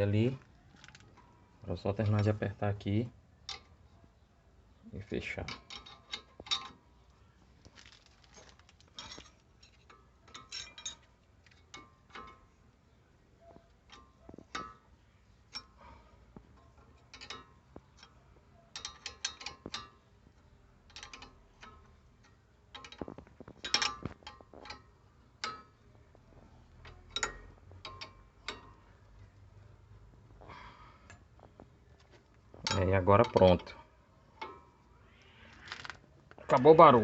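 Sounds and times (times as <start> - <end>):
metallic clinks: 7.8 - 12.6, 20.8 - 35.7
ratchet wrench clicking: 20.9 - 21.8.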